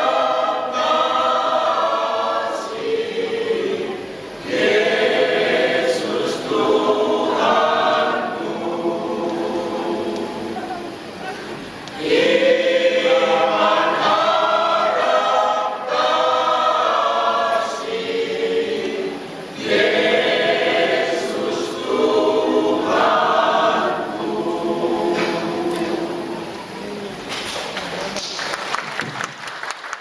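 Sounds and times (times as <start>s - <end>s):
church choir singing: 0.0s - 11.1s, 11.9s - 26.8s.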